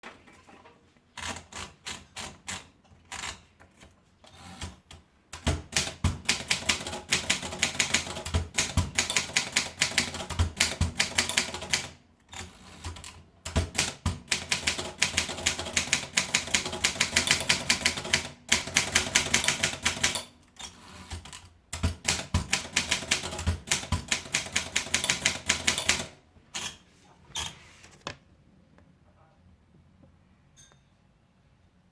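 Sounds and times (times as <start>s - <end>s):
typewriter keystrokes: 5.4s - 20.3s, 21.1s - 26.7s.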